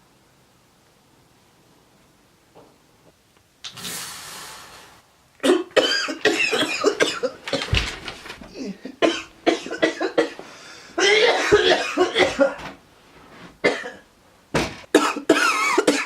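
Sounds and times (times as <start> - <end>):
person coughing: 5.4 - 7.8, 8.5 - 12.7, 13.6 - 14.0, 14.9 - 16.0.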